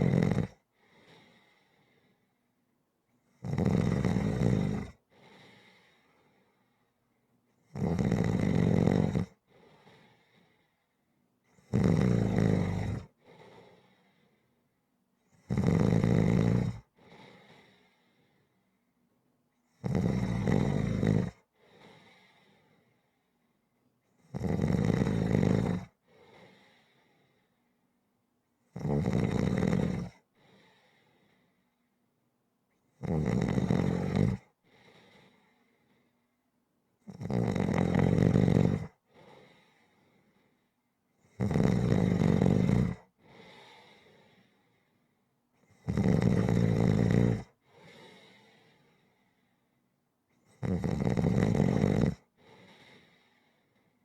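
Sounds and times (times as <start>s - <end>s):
loud snoring: 0.0s - 1.3s, 3.4s - 5.8s, 7.6s - 9.4s, 11.6s - 13.7s, 15.3s - 17.8s, 19.8s - 22.3s, 24.2s - 26.7s, 28.7s - 30.2s, 33.0s - 34.5s, 37.1s - 39.0s, 41.2s - 43.8s, 45.7s - 48.4s, 50.5s - 53.2s
faint breath sound: 0.6s - 3.3s, 5.0s - 7.3s, 9.3s - 11.5s, 13.0s - 14.8s, 16.8s - 19.1s, 21.4s - 23.7s, 25.9s - 27.9s, 30.2s - 32.0s, 34.4s - 36.4s, 38.8s - 40.9s, 43.0s - 45.8s, 47.5s - 50.6s, 52.2s - 54.0s.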